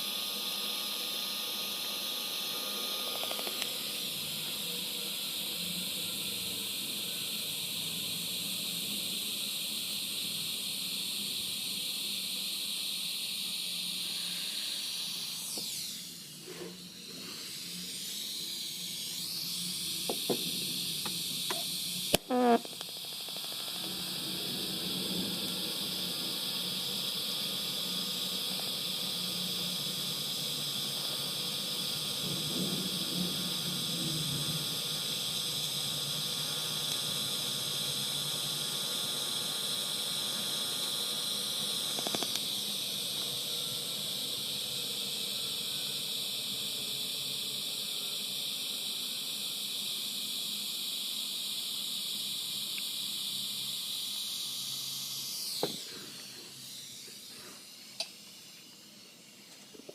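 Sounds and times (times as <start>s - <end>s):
welding arc hissing and buzzing: 0.0s - 59.9s
sharp pop: 55.6s - 55.9s.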